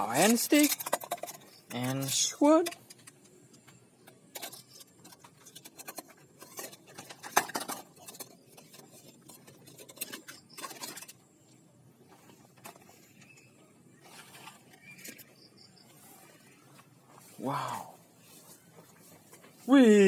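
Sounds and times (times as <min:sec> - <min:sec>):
plastic toys clicking and rattling: 0:00.0 - 0:11.6, 0:12.2 - 0:15.8.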